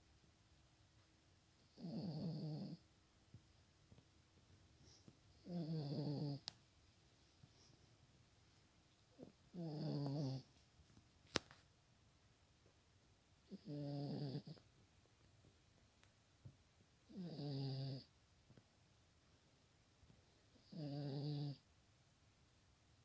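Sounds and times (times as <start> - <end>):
dog snoring: 1.6 - 2.8, 5.3 - 6.5, 9.2 - 10.5, 13.5 - 14.6, 17.1 - 18.1, 20.5 - 21.6.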